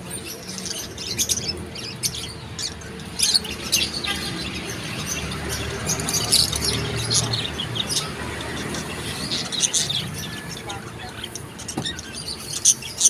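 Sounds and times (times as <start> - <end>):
small birds chirping and squawking: 0.0 - 13.0.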